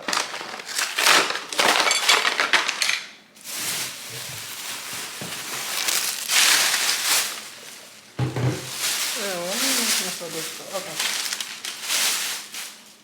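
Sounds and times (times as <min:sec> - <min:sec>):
plastic bag crinkling: 0:00.0 - 0:13.0.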